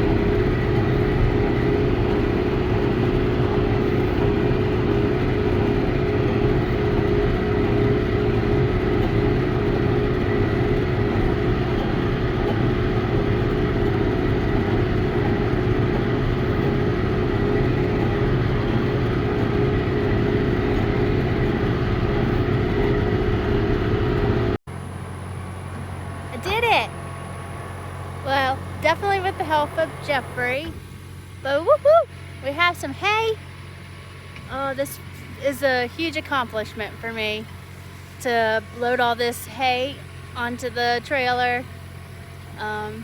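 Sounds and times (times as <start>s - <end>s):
steady hum: 0.0s - 33.4s
tractor diesel engine: 0.0s - 43.0s.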